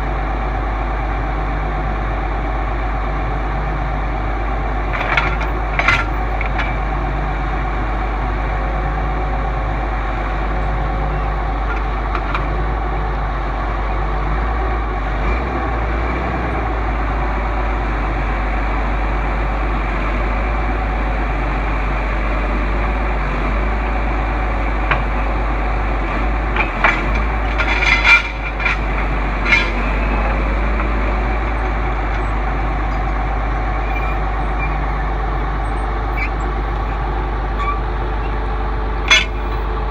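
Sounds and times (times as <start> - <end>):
heavy vehicle engine running: 0.0 - 39.9
short metallic clanks: 4.9 - 6.8, 26.6 - 30.9, 39.1 - 39.7.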